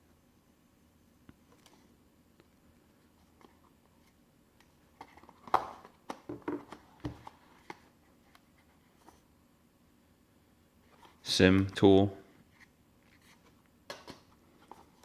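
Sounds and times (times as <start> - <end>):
box handled with taps and rustles: 5.0 - 7.9.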